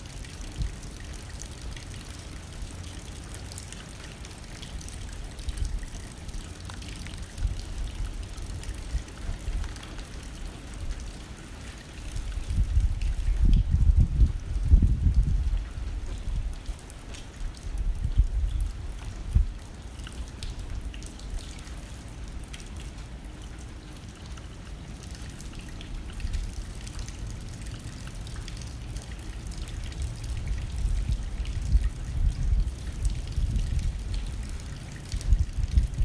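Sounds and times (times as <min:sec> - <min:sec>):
rain hitting a window: 0:00.0 - 0:36.0
gusting wind: 0:12.2 - 0:16.8, 0:17.4 - 0:19.6, 0:29.3 - 0:36.0.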